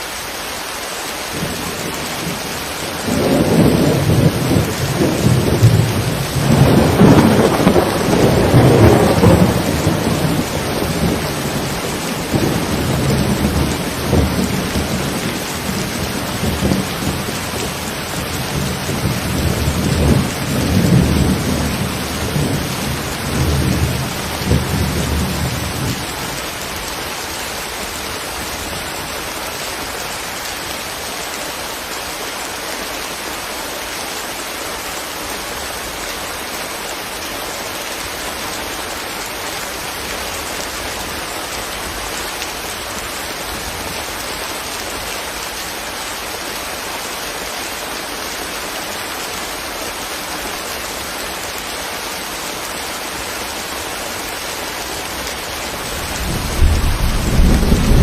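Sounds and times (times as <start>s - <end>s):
steady rain falling: 0.0s - 58.0s
thunder rumbling: 2.3s - 26.4s, 55.8s - 58.0s.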